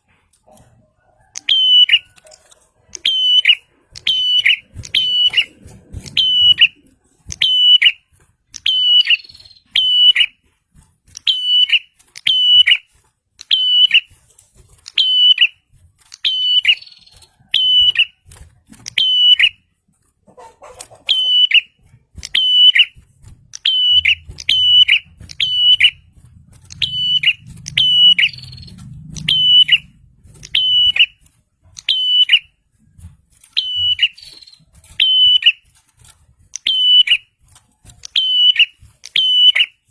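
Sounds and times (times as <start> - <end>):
bird sharp chirps: 2.9 - 10.4, 11.2 - 14.2, 16.2 - 18.2, 21.0 - 23.0, 23.6 - 31.2, 31.8 - 32.6, 33.6 - 35.7, 36.6 - 37.3, 38.0 - 39.8.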